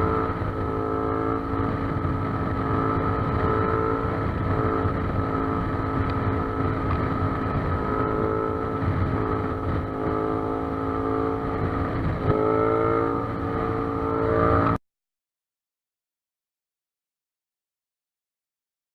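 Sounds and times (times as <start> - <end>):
motorcycle engine running: 0.0 - 14.8.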